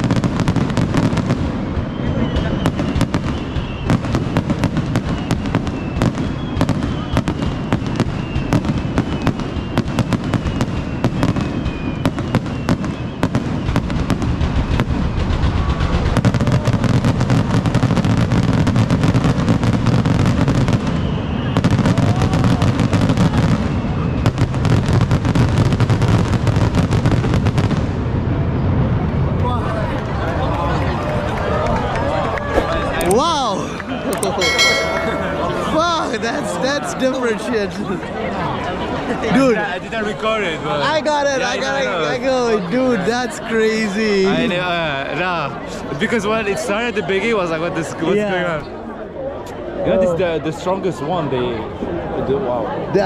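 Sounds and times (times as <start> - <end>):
fireworks bangs and crackles: 0.0 - 37.8.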